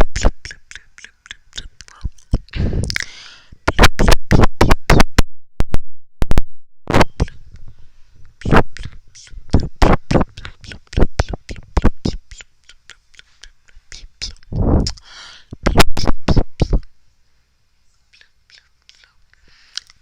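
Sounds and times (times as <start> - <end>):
wet mouth clicks and pops: 0.1 - 3.1, 3.7 - 5.2, 8.4 - 16.9, 19.7 - 20.0
short breath: 2.5 - 3.6, 14.6 - 15.6, 19.3 - 20.0.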